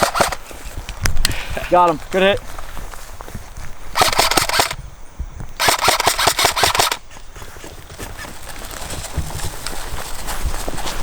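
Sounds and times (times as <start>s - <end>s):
airsoft rifle full auto bursts: 0.0s - 0.5s, 3.9s - 4.8s, 5.6s - 7.0s.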